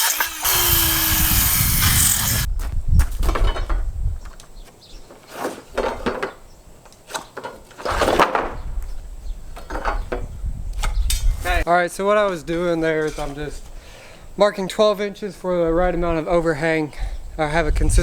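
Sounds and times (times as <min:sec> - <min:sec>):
power saw cutting wood: 0:00.0 - 0:02.5.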